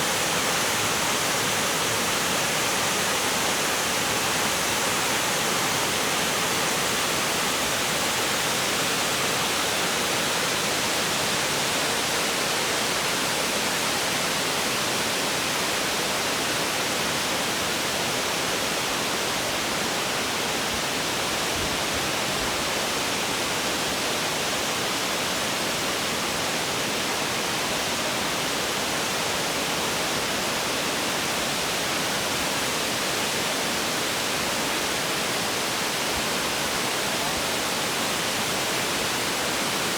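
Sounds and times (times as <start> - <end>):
falling water rushing: 0.0 - 14.4.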